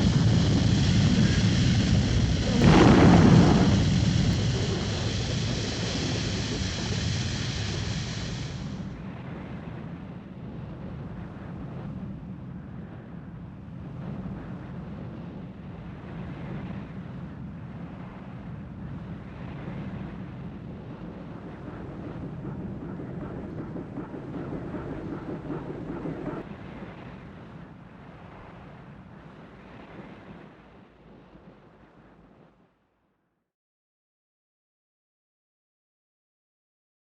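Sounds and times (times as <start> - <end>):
water wash: 0.0 - 9.7, 19.4 - 27.0
deep boat engine drone: 0.0 - 9.9, 19.2 - 26.4
wind: 0.0 - 33.0.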